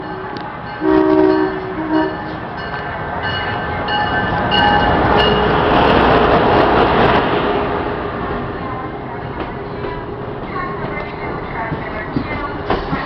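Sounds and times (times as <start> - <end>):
train horn blasts: 0.0 - 2.4
train rushing past: 0.0 - 13.0.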